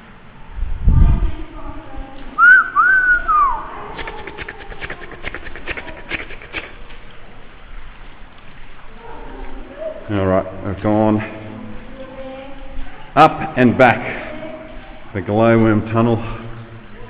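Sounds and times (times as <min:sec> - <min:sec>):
whistled notes: 0:02.4 - 0:03.7.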